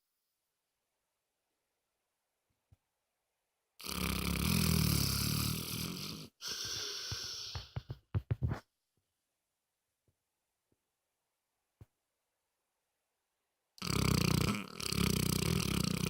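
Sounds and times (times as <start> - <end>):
dog snoring: 3.8 - 7.8, 13.8 - 16.0.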